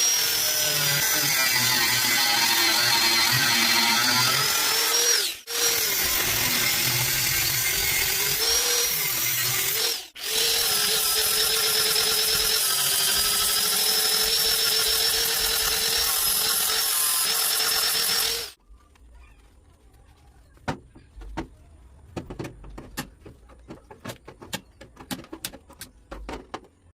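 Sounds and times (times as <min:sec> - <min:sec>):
power tool whining: 0:00.0 - 0:18.6.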